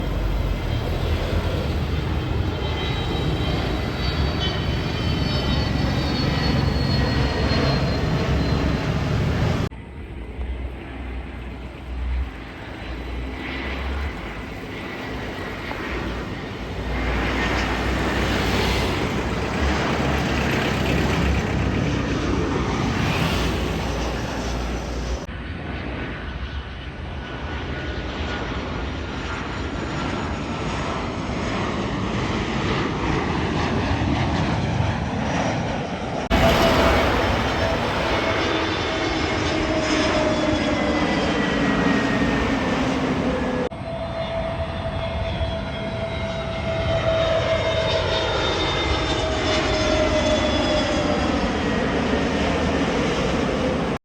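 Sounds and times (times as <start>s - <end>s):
faint high whine: 0.0s - 21.4s
airliner engine rumble: 0.0s - 54.0s.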